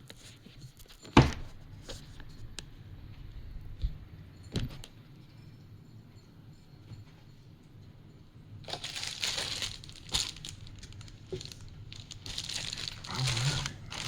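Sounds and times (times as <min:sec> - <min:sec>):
packaging crinkling: 0:08.7 - 0:14.0.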